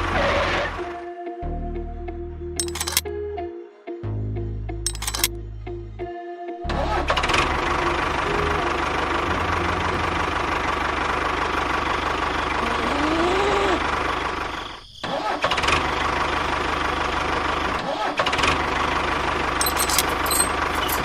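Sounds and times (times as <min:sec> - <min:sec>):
small engine running: 0:07.1 - 0:14.7.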